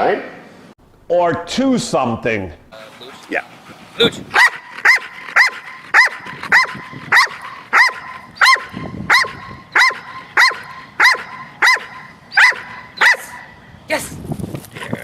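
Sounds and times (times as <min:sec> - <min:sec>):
dog barking: 0:04.4 - 0:13.6.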